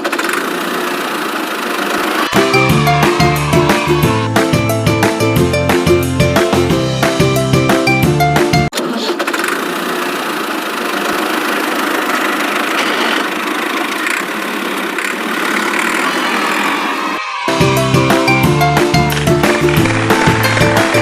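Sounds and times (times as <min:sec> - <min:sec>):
toy vehicle engine running: 0:00.0 - 0:04.3, 0:08.8 - 0:17.5, 0:19.1 - 0:21.0.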